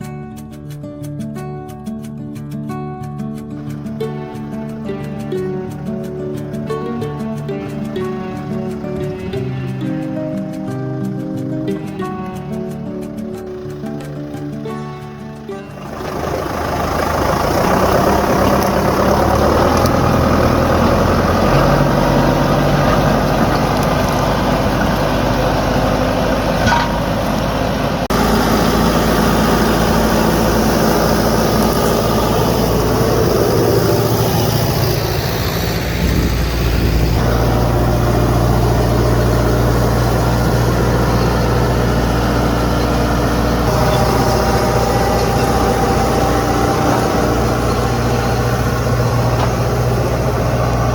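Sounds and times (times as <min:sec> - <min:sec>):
tractor diesel engine running: 0:03.6 - 0:50.9.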